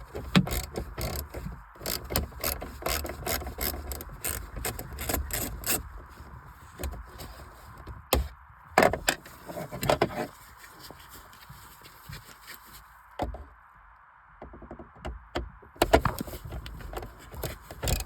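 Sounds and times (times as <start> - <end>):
hand tool scraping and clicking: 0.0 - 11.5, 15.8 - 18.0.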